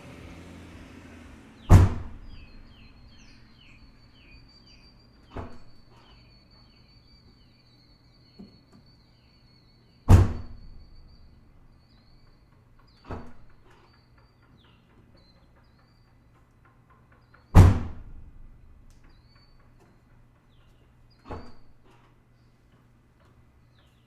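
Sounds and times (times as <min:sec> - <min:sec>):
car trunk lid shutting: 0:00.3 - 0:03.7.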